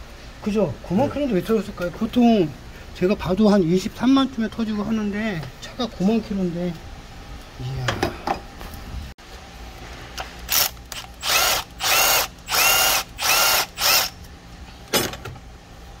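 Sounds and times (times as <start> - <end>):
power drill whine: 10.5 - 14.1.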